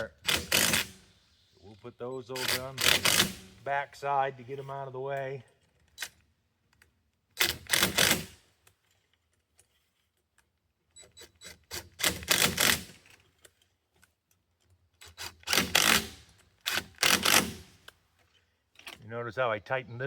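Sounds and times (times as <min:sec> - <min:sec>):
rapid clicking and rasping: 0:00.0 - 0:01.0, 0:02.3 - 0:03.5, 0:14.6 - 0:19.0
hose clamps being tightened: 0:00.0 - 0:01.1, 0:02.3 - 0:03.6, 0:05.6 - 0:19.0.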